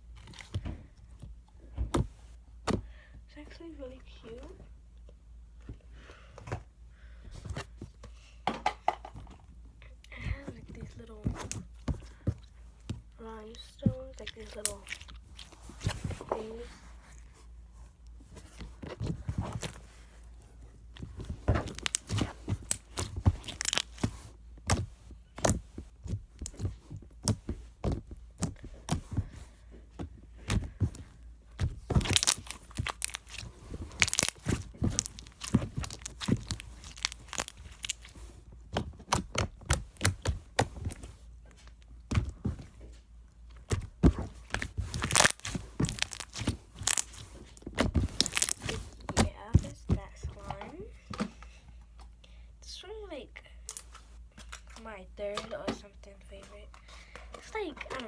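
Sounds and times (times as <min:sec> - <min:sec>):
slime popping and crackling: 0:13.4 - 0:16.6, 0:21.3 - 0:25.6, 0:31.6 - 0:38.3, 0:43.7 - 0:50.5.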